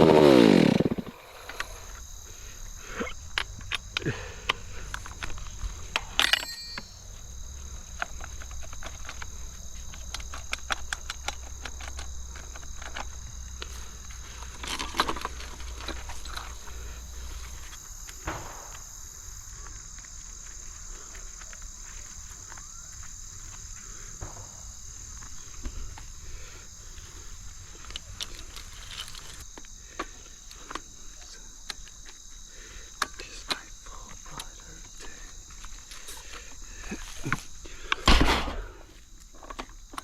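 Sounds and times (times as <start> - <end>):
insect chorus: 0.0 - 40.0
clicks and crackles: 7.9 - 16.6.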